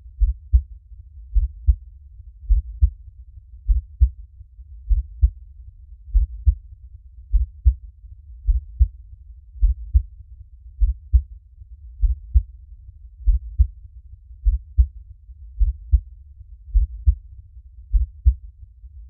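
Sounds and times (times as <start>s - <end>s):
heartbeat thumps: 0.2s - 0.7s, 1.3s - 1.8s, 2.5s - 3.0s, 3.7s - 4.2s, 4.9s - 5.4s, 6.1s - 6.6s, 7.3s - 7.8s, 8.5s - 9.0s, 9.6s - 10.1s, 10.8s - 11.3s, 12.0s - 12.5s, 13.2s - 13.7s, 14.4s - 14.9s, 15.6s - 16.1s, 16.7s - 17.2s, 17.9s - 18.4s
low rumble: 1.3s - 3.0s, 8.4s - 10.2s, 12.0s - 13.8s, 14.4s - 17.3s.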